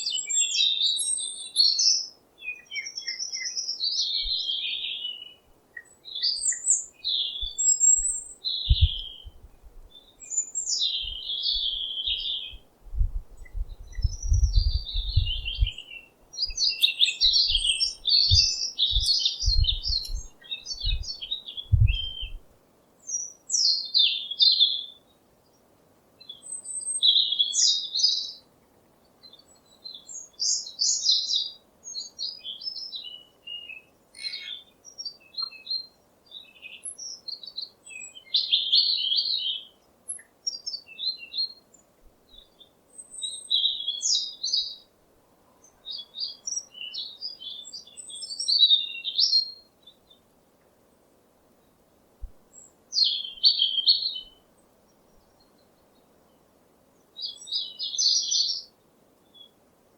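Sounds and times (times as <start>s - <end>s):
birds twittering: 0.0s - 9.4s, 10.0s - 22.4s
low thumps: 21.7s - 22.4s.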